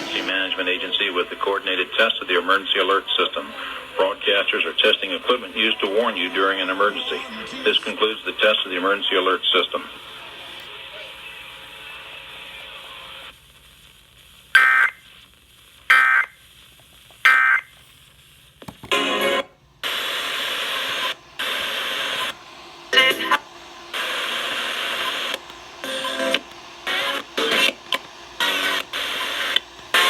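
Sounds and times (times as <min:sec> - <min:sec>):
data tone squawks: 0:14.6 - 0:15.0, 0:15.9 - 0:16.3, 0:17.3 - 0:17.7.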